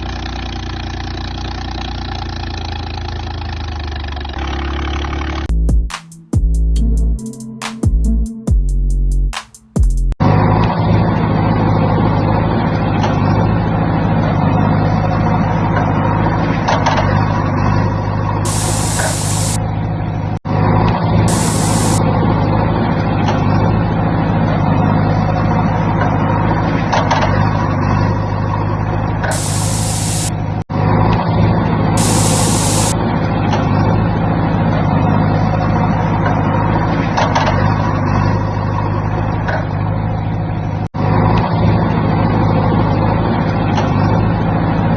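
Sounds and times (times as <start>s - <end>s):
air brake hisses: 18.5s - 19.6s, 21.3s - 22.0s, 29.3s - 30.3s, 32.0s - 33.0s
diesel truck engine running: 18.5s - 19.6s, 29.3s - 30.3s.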